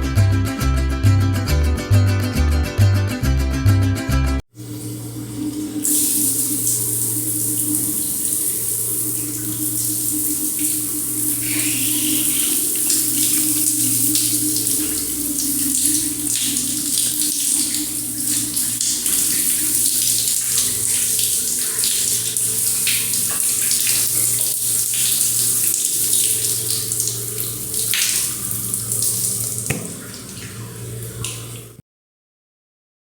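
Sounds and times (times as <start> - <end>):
low steady hum: 4.6 - 31.7
shower water spraying: 4.6 - 31.8.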